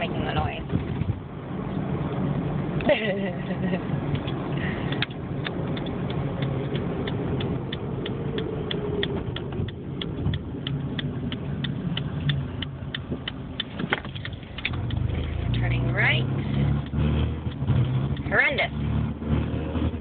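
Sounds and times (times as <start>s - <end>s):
engine and road drone: 0.0s - 20.0s
turn signal ticking: 0.0s - 20.0s.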